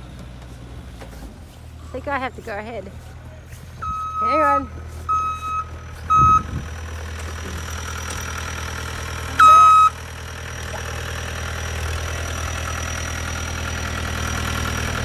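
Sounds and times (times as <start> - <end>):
vehicle engine idling: 0.0 - 15.0
high electronic warning beep: 3.8 - 6.5, 9.4 - 10.0.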